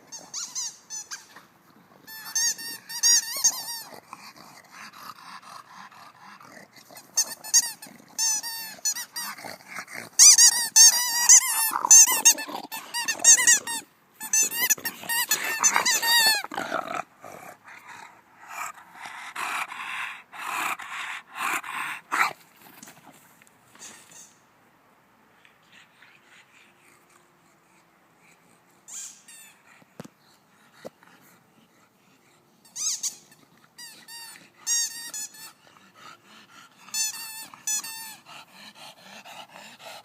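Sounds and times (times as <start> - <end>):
squeaky toy squeaking: 0.1 - 1.4, 2.1 - 4.0, 7.2 - 9.4, 10.2 - 16.4, 28.9 - 29.6, 32.6 - 35.6, 36.8 - 38.2
dog growling: 3.7 - 10.3, 11.1 - 13.8, 14.4 - 22.4.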